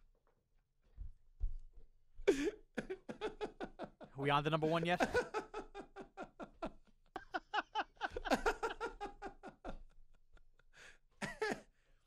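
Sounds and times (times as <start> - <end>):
men laughing: 2.3 - 11.6.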